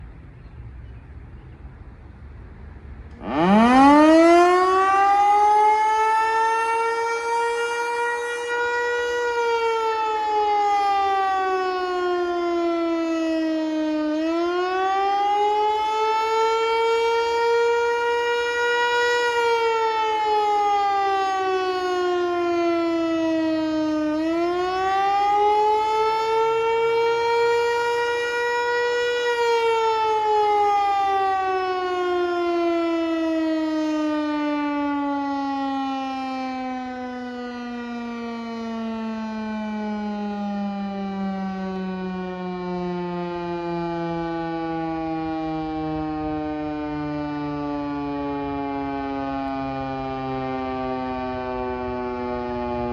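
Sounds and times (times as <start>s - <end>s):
outdoor warning siren wailing: 0.0s - 52.9s.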